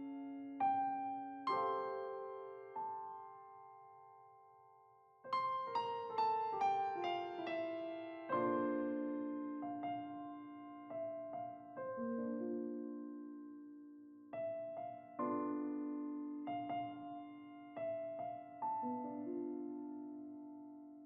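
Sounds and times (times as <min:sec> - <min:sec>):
solo piano music: 0:00.0 - 0:21.0.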